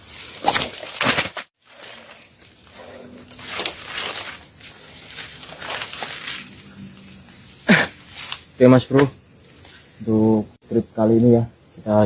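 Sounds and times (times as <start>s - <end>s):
rustling: 0.0s - 8.6s
crickets chirring: 0.0s - 12.0s.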